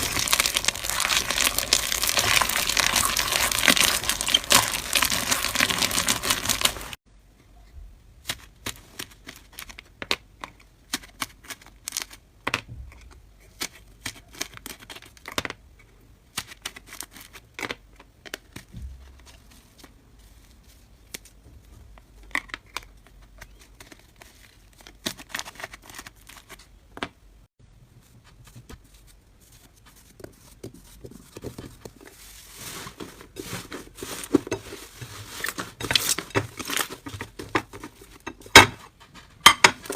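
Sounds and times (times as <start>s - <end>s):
slime crackling and popping: 0.0s - 7.0s.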